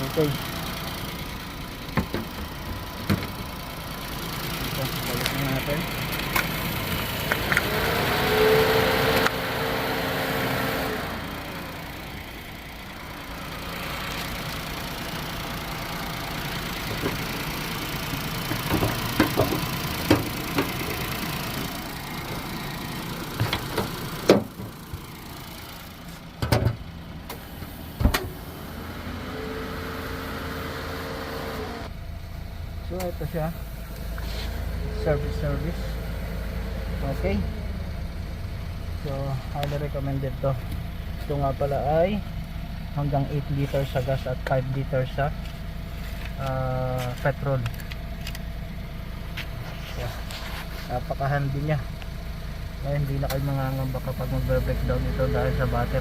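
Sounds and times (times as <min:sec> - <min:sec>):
car engine idling: 0:00.0 - 0:56.0
sharp clicks and knocks: 0:18.1 - 0:21.0.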